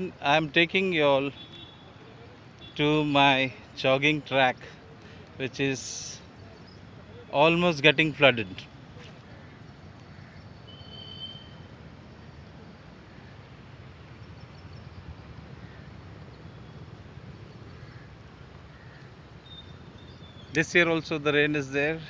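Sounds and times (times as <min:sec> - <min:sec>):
faint bird chirps: 0:09.4 - 0:12.6, 0:18.7 - 0:20.6.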